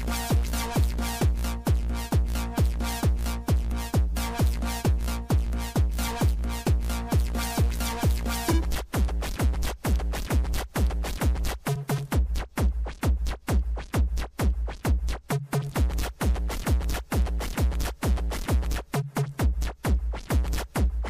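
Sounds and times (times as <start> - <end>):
four-on-the-floor kick drum: 0.0 - 21.0.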